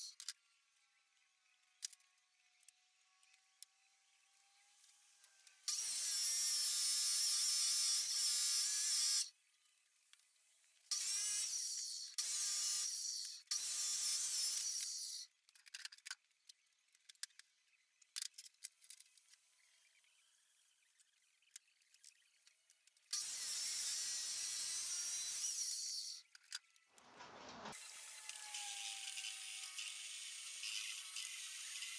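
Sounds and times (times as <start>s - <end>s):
electric drill whining: 5.7s - 9.3s, 27.1s - 31.9s.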